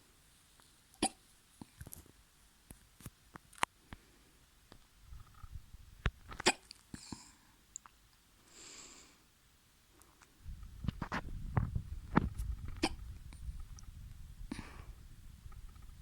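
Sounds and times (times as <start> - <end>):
person hiccupping: 1.0 - 1.2, 6.4 - 7.2, 12.8 - 13.1
soft breath: 8.4 - 9.3, 14.4 - 15.1
low rumbling noise: 10.4 - 16.0.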